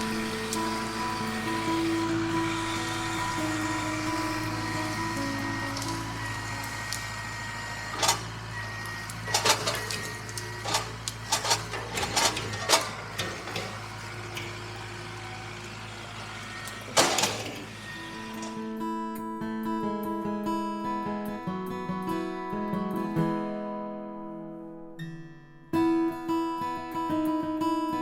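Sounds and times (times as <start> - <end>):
tractor diesel engine running: 0.0 - 18.7.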